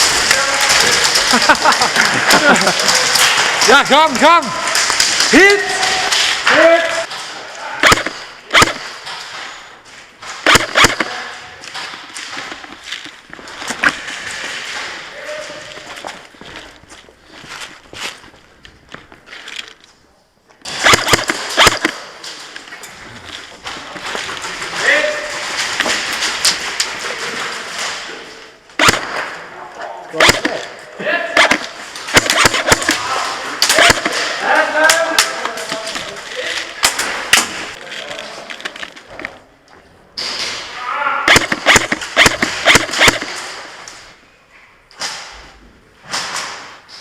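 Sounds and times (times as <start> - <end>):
airsoft gunfire cracks: 20.7 - 22.0, 28.8 - 29.2, 41.3 - 43.4.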